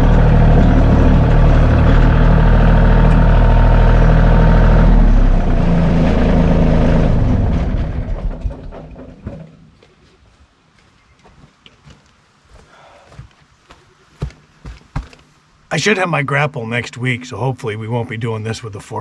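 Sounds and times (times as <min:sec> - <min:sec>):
tractor engine running and stopping: 0:00.0 - 0:09.7.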